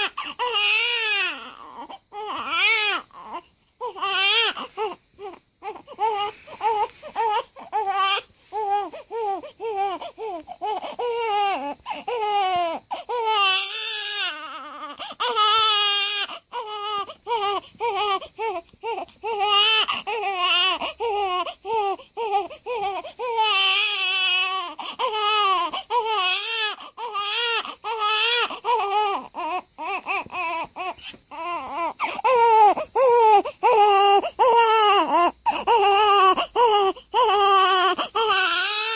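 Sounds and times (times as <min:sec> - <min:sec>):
newborn baby crying: 0:00.0 - 0:38.9.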